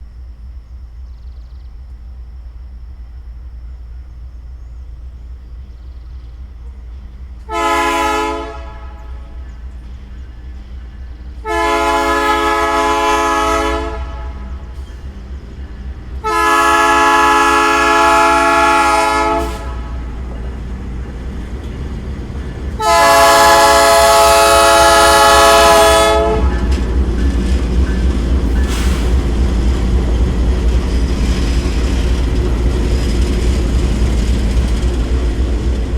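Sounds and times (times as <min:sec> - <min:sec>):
passing train rumble: 0:00.0 - 0:35.9
locomotive horn blasts: 0:07.5 - 0:09.5, 0:11.4 - 0:14.8, 0:16.2 - 0:20.4, 0:22.7 - 0:27.4.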